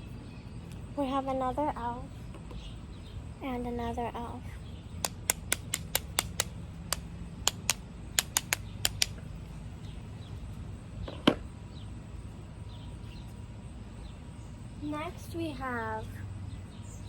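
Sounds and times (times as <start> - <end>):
lipstick tubes clicking: 5.0 - 9.2.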